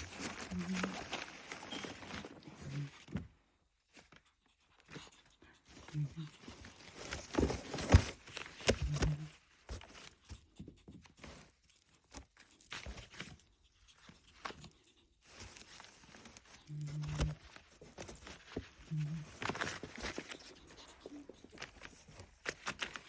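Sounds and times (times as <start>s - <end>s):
ferret breathy huffing: 18.2s - 22.6s.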